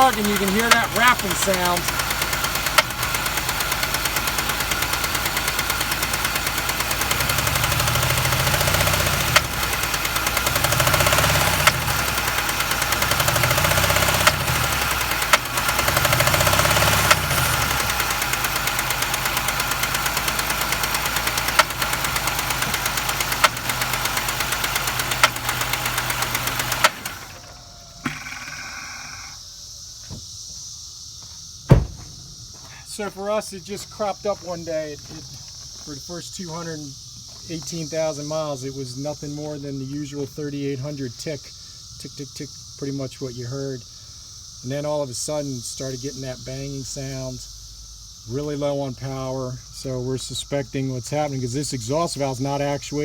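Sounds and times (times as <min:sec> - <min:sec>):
engine revving: 0:00.0 - 0:29.3
engine running with metallic rapping: 0:00.0 - 0:30.4, 0:31.7 - 0:33.2.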